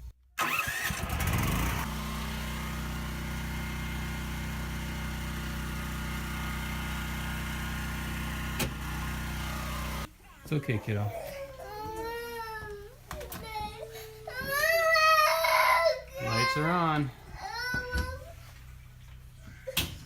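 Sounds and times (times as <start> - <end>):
generator engine running: 0.4 - 10.1.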